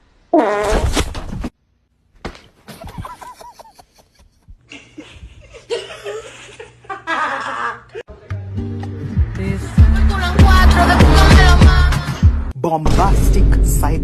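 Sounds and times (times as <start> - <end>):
person laughing: 2.7 - 8.0.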